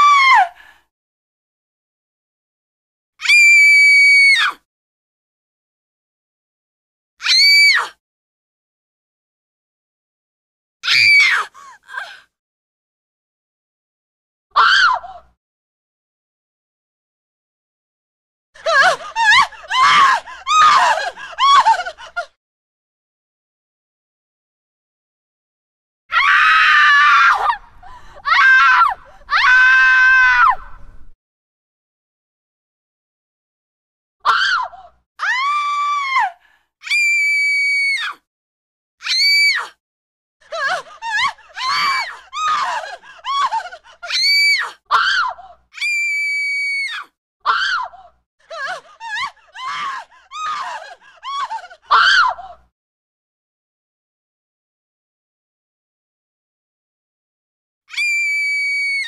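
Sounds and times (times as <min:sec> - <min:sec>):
woman screaming: 0:00.0 - 0:00.5, 0:10.8 - 0:11.4, 0:18.7 - 0:21.9, 0:26.1 - 0:27.6, 0:28.2 - 0:30.6, 0:35.2 - 0:38.2, 0:40.6 - 0:47.9, 0:49.0 - 0:52.5, 0:57.9 - 0:59.0.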